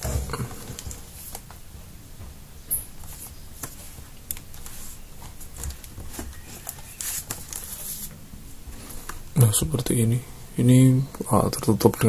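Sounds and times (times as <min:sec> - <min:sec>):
short rustle: 0:04.6 - 0:09.2.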